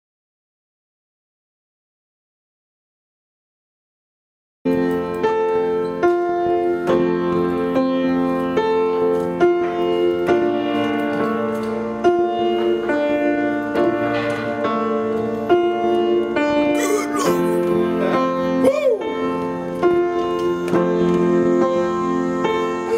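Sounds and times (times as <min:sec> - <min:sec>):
piano playing slow chords: 0:04.7 - 0:22.9.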